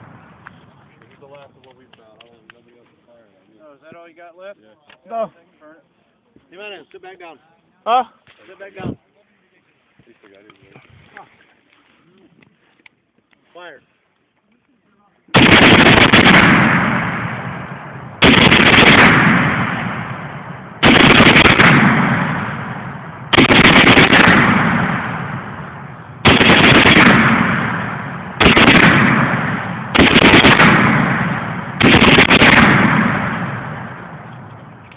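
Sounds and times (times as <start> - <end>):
loud gunshots: 15.3 - 34.3
booming echo: 15.4 - 34.8.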